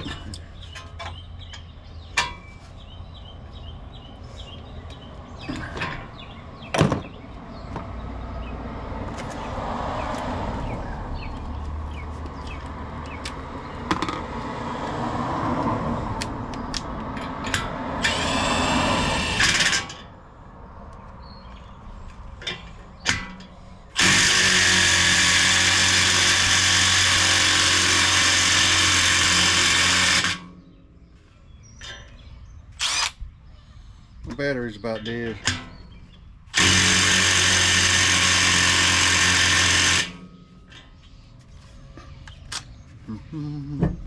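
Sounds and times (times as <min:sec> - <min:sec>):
cordless power drill running: 0:18.0 - 0:20.0, 0:24.0 - 0:30.5, 0:32.8 - 0:33.1, 0:36.5 - 0:40.2.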